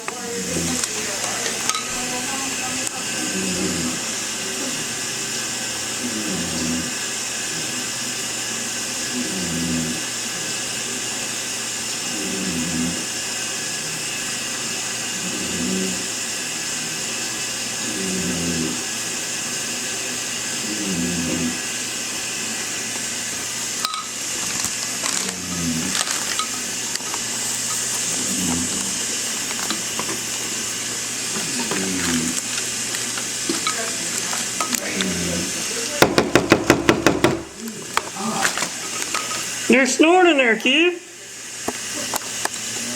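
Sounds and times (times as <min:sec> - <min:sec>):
running shower hiss: 0:00.0 - 0:42.9
man snoring: 0:00.2 - 0:00.9, 0:03.1 - 0:04.9, 0:05.9 - 0:07.8, 0:09.0 - 0:10.2, 0:12.1 - 0:13.2, 0:15.0 - 0:17.0, 0:17.8 - 0:18.9, 0:20.6 - 0:21.8, 0:25.2 - 0:26.0, 0:27.4 - 0:30.0, 0:31.4 - 0:32.4.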